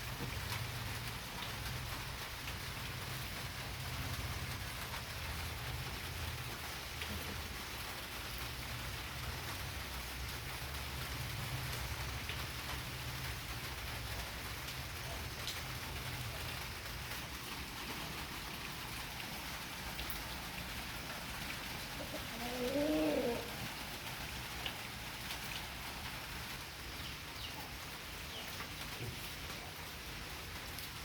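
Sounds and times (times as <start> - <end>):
steady rain falling: 0.0 - 31.0
cooing bird call: 21.9 - 23.8.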